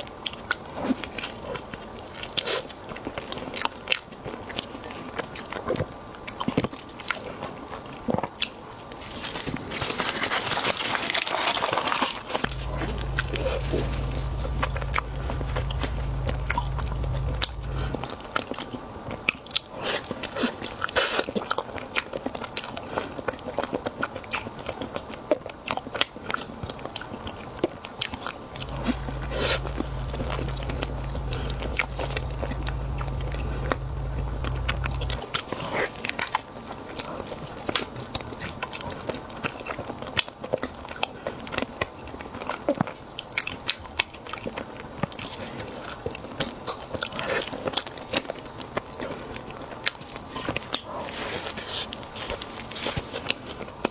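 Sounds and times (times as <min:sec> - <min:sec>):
person chewing crunchy food: 0:06.4 - 0:18.7, 0:19.4 - 0:53.9
low steady hum: 0:10.7 - 0:18.4, 0:28.5 - 0:35.4.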